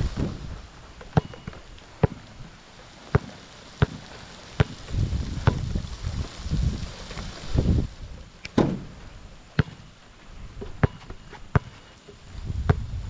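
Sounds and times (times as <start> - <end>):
wind noise on microphone: 0.0 - 11.6, 12.2 - 13.0
basketball bouncing: 1.1 - 2.3, 3.1 - 4.0, 4.6 - 4.8, 9.6 - 9.9, 10.6 - 11.8, 12.6 - 12.9.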